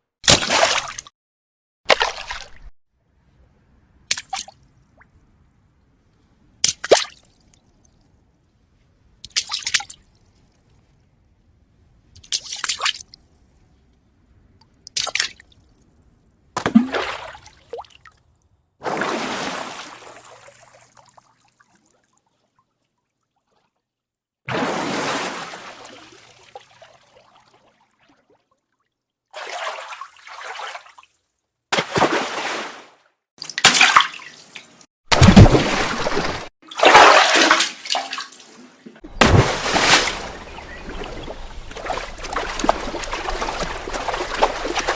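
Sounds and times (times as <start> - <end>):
water splashes: 0.3 - 1.1, 1.9 - 2.7, 16.6 - 18.2, 18.8 - 22.2, 24.5 - 28.5, 29.4 - 31.2, 31.8 - 44.9.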